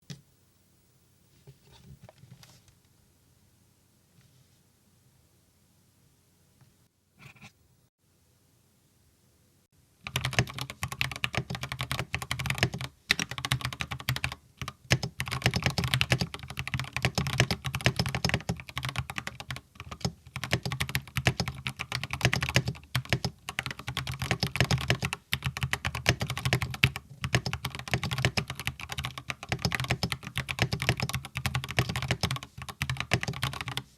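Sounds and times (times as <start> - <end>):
typing on mechanical keyboard: 10.0 - 33.9.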